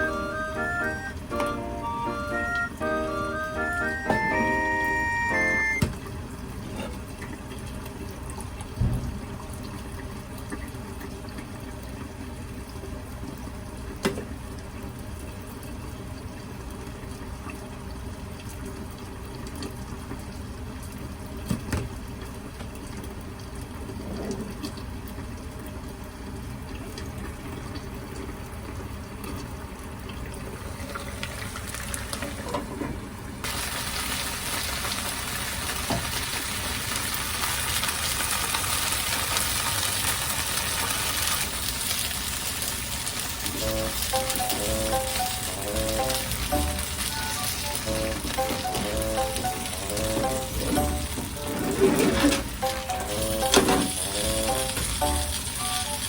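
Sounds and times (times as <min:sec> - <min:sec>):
tap water running: 0:00.0 - 0:56.0
sizzling hiss: 0:43.3 - 0:51.6, 0:52.5 - 0:56.0.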